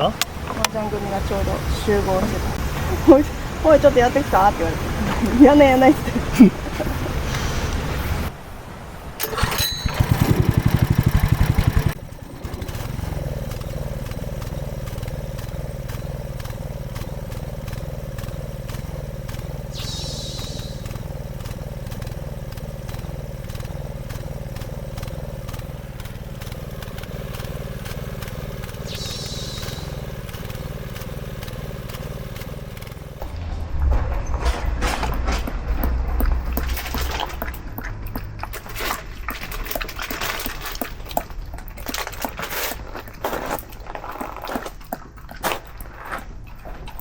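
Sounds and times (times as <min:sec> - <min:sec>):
small engine cranking and running: 0:09.2 - 0:33.4, 0:35.0 - 0:47.0.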